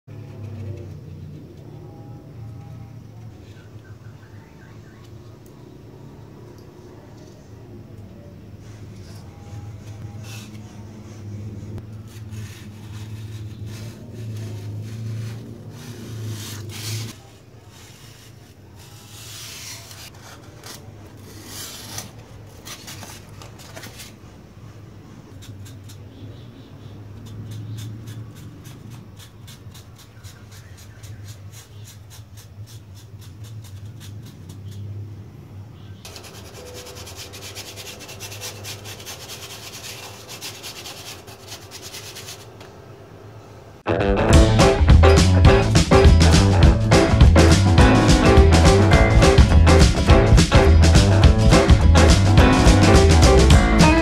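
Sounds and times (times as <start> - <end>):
scraping on styrofoam: 8.6 - 26.1, 27.2 - 34.8, 36.1 - 42.6
music with drums: 43.9 - 54.0.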